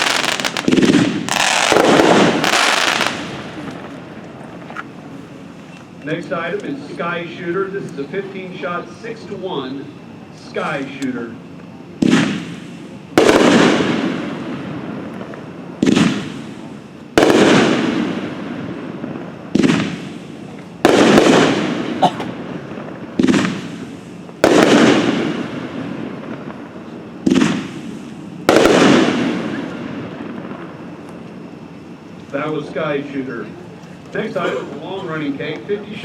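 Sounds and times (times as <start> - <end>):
firework aerial break: 0.0 - 4.5, 12.0 - 14.6, 15.3 - 18.6, 19.5 - 26.6, 27.2 - 30.7.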